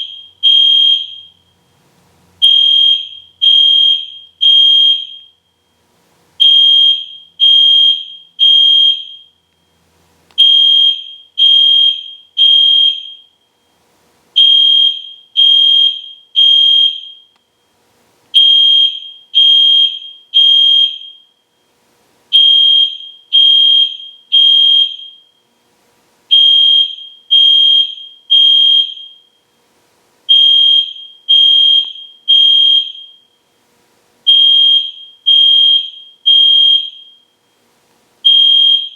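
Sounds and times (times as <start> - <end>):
fire alarm horn beeping: 0.0 - 1.6, 2.4 - 5.6, 6.4 - 9.4, 10.4 - 13.7, 14.4 - 17.4, 18.4 - 21.6, 22.3 - 25.4, 26.3 - 29.5, 30.3 - 33.4, 34.3 - 37.4, 38.2 - 38.9.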